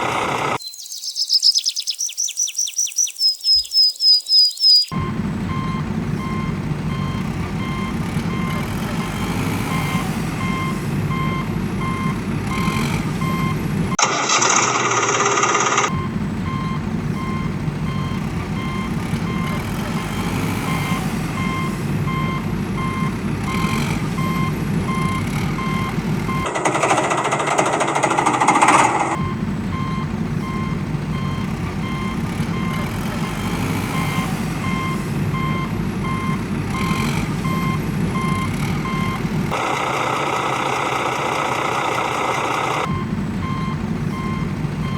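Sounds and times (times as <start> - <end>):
heavy machine engine running: 0.0 - 0.6, 4.9 - 44.9
reversing alarm beeping: 2.1 - 13.8, 15.4 - 39.6, 40.2 - 44.9.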